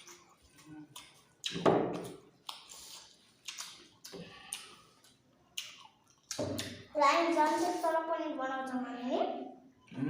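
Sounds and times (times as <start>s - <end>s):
chewing and mouth noises: 0.0s - 6.9s.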